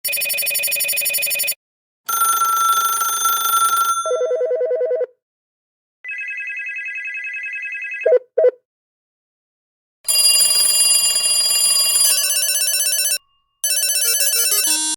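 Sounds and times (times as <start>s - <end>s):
phone ringtone trilling: 0.0s - 5.0s, 6.1s - 8.2s, 10.1s - 14.9s.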